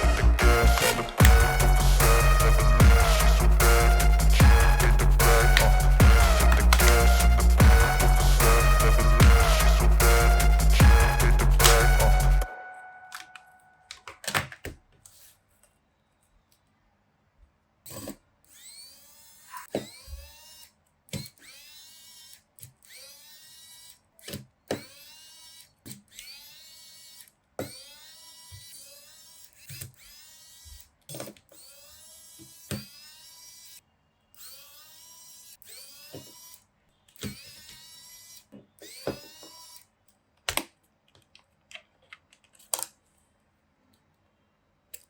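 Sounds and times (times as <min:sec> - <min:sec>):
small electric motor spinning: 0:00.0 - 0:12.5, 0:17.9 - 0:33.8, 0:34.4 - 0:36.6, 0:37.2 - 0:39.9.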